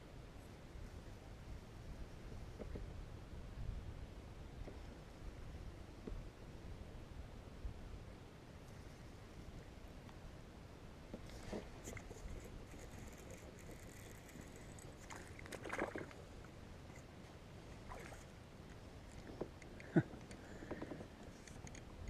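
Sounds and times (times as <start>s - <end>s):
water splashes around kayak: 11.2s - 16.5s, 17.7s - 18.4s.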